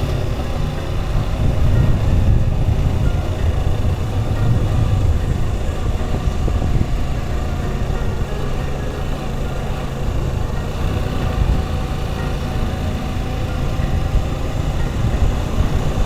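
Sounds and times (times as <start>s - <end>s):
wind rushing noise: 0.0s - 8.5s
motorcycle engine running: 0.0s - 16.0s.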